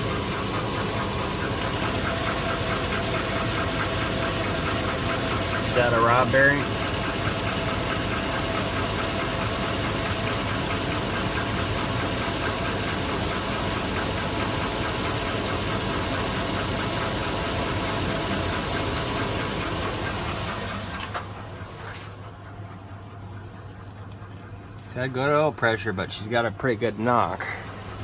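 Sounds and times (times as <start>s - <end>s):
rapid engine knock: 0.0s - 21.5s
engine idling: 0.0s - 28.0s.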